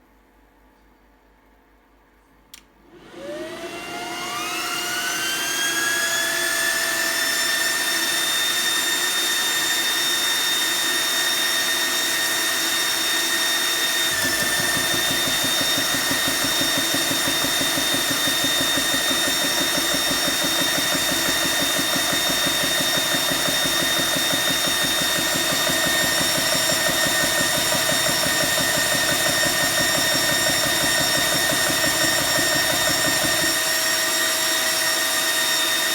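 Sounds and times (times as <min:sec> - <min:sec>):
air compressor motor whine: 0:02.9 - 0:35.9
low fast pump pulsing: 0:14.0 - 0:35.0.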